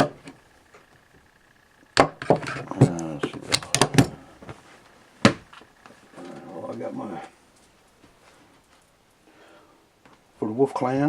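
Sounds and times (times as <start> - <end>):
hard items clicking: 2.0 - 4.5
hard items knocking: 2.0 - 4.6, 5.2 - 5.5.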